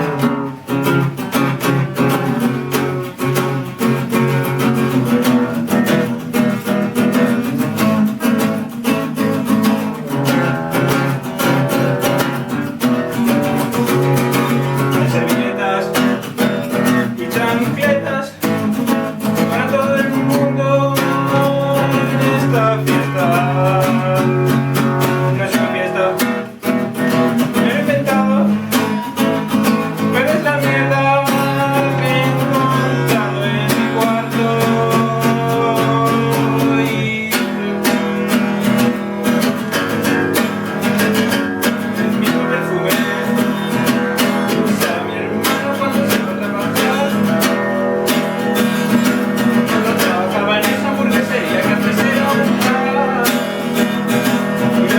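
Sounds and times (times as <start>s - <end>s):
acoustic guitar strumming: 0.0s - 54.9s.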